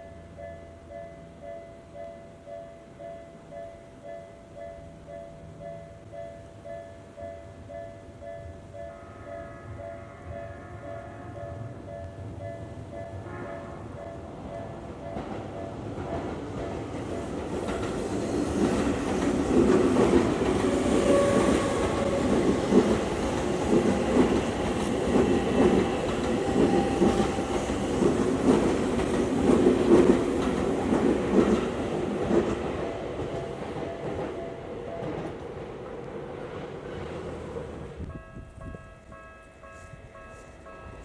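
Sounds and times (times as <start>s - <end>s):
electric train passing: 0.0s - 41.0s.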